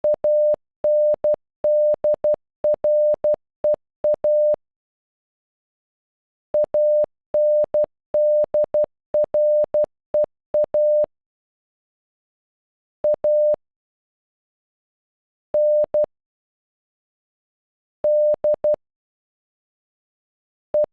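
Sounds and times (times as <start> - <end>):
morse code beeps: 0.0 - 3.4, 4.1 - 4.6, 6.6 - 11.1, 13.1 - 13.6, 15.6 - 16.1, 18.1 - 18.8.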